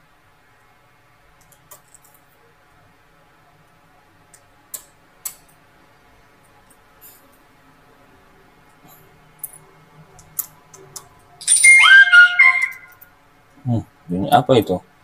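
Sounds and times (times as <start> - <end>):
faint background hum: 0.0 - 15.0.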